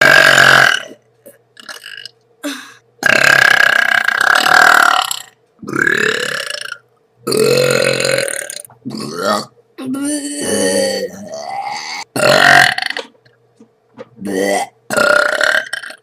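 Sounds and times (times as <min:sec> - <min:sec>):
boy burping loudly: 0:00.0 - 0:13.1, 0:14.2 - 0:16.0.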